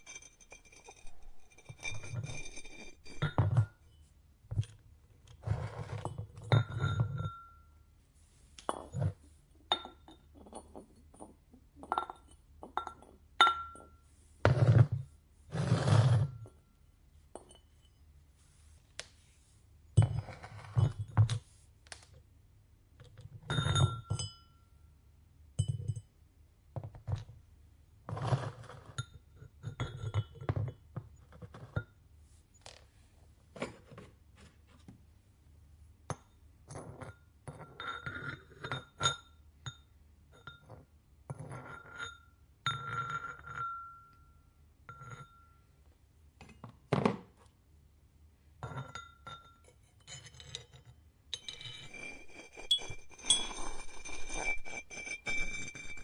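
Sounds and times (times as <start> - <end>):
pottery and tools clinking: 0.0 - 7.9, 8.6 - 18.1, 20.0 - 21.4, 23.4 - 24.8, 25.6 - 26.1, 28.2 - 32.0, 36.1 - 45.8, 48.6 - 56.0.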